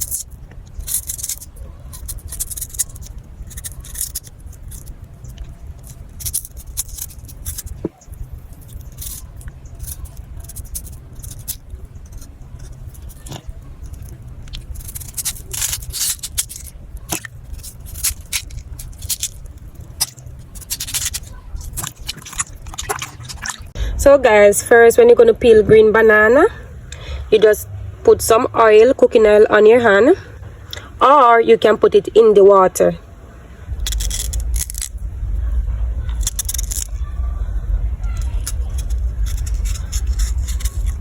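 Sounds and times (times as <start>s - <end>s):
low steady hum: 0.0s - 41.0s
knife scraping vegetables: 8.6s - 23.6s.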